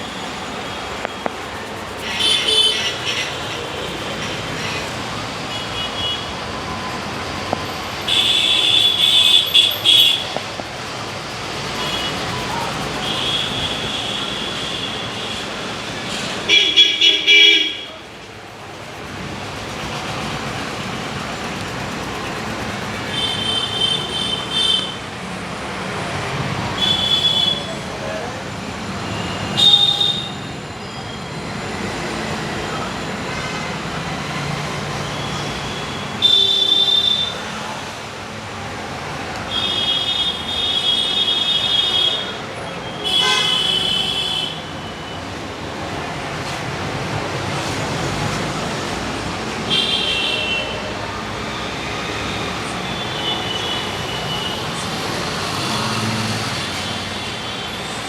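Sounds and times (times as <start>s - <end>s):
traffic hum: 0.0s - 36.2s, 36.8s - 58.0s
vehicle horns honking: 0.1s - 10.4s, 16.4s - 18.1s, 22.0s - 25.0s, 26.8s - 27.7s, 43.0s - 44.7s.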